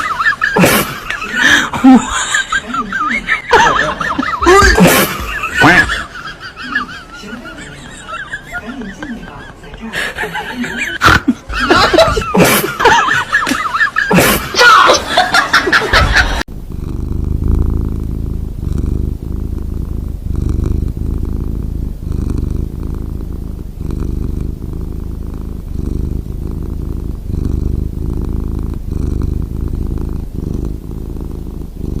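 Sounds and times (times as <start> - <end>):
cat purring: 15.9 - 32.0.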